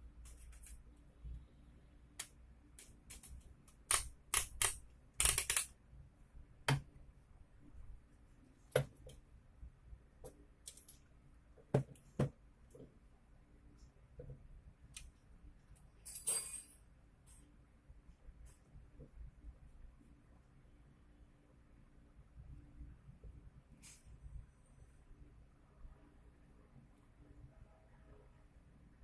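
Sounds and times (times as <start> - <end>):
small parts clicking and clattering: 2.8 - 5.8, 10.6 - 11.1, 15.8 - 17.5.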